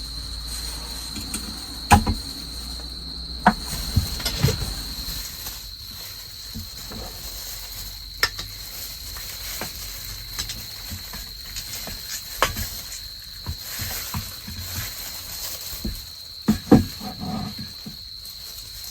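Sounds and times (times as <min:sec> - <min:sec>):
crickets chirping: 0:00.0 - 0:18.9
sharp clicks and knocks: 0:01.1 - 0:02.6.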